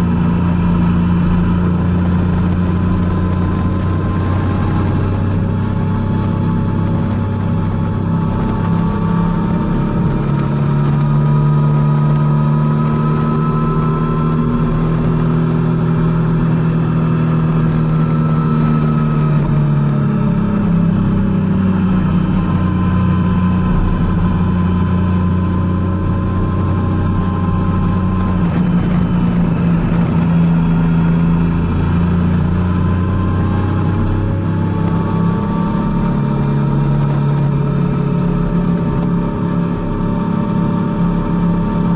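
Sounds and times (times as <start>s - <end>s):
motorcycle engine running: 0.0s - 41.9s.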